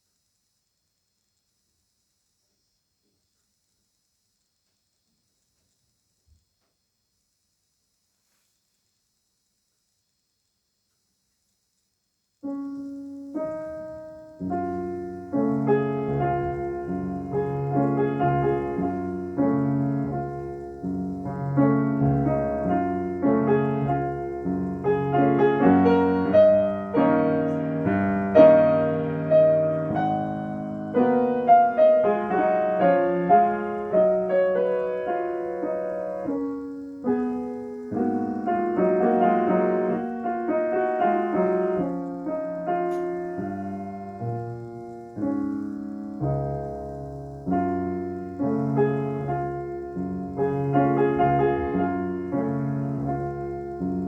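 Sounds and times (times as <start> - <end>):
solo piano classical music: 12.4 - 54.0.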